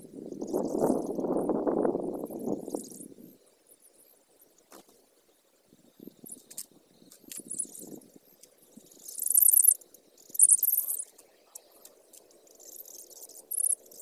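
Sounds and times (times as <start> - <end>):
faint background hiss: 0.0 - 14.0
bird chattering calls: 8.9 - 11.8, 12.5 - 14.0.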